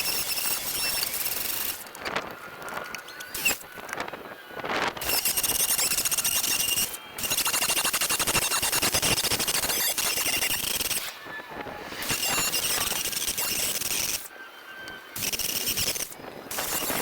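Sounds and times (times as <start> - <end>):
angle grinder cutting metal: 0.0 - 2.0, 3.1 - 3.6, 5.0 - 17.0.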